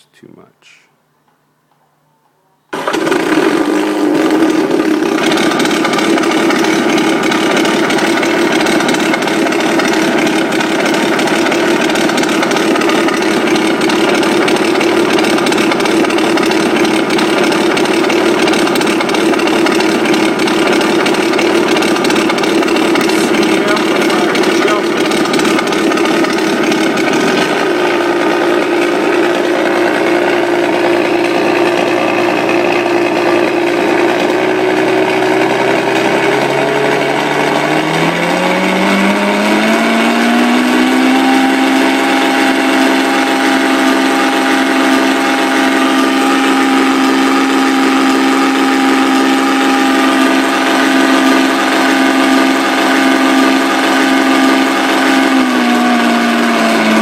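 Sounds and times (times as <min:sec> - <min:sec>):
simulated aircraft engine sound: 0:02.9 - 0:32.8.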